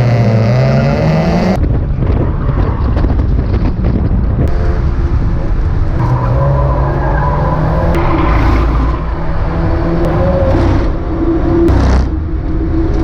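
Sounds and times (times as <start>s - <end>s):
wind noise: 0.6s - 13.0s
race car engine revving: 4.5s - 12.6s.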